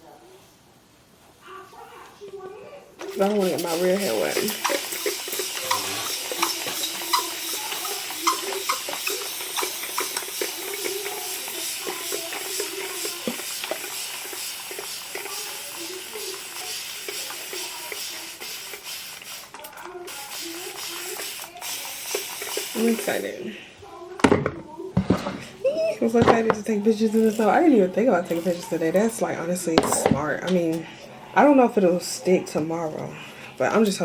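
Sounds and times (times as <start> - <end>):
tap water running into sink: 3.0 - 23.4, 26.0 - 30.8.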